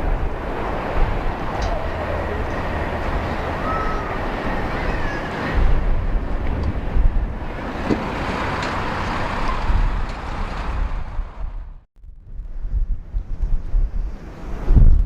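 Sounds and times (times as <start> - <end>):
jet airliner engine passing: 0.0 - 11.8
wind buffeting microphone: 0.0 - 15.0.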